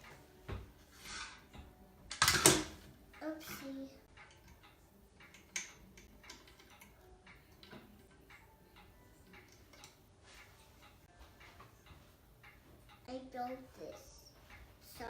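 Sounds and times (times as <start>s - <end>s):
plastic toy bricks clicking: 2.1s - 2.8s, 4.2s - 7.8s.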